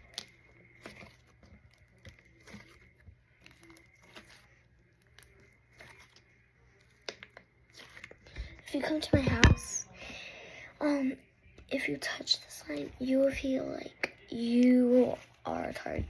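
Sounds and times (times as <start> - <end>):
sticky crackles and small pops: 0.0 - 8.9.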